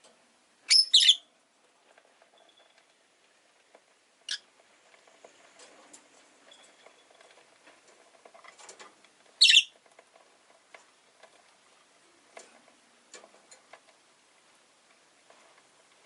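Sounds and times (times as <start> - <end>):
bird high chirps: 0.7 - 1.3, 9.4 - 9.7
faint clicks and rustling: 1.5 - 16.0.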